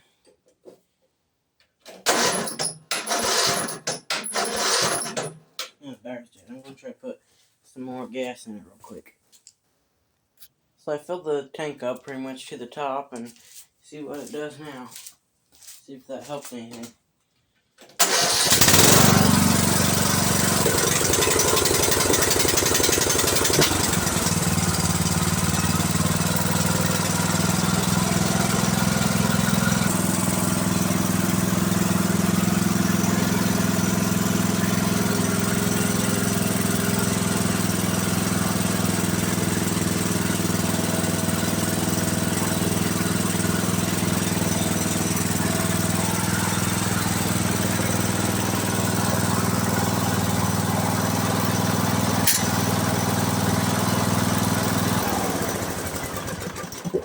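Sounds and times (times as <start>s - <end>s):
lawn mower engine running: 2.1s - 5.3s, 18.0s - 57.0s.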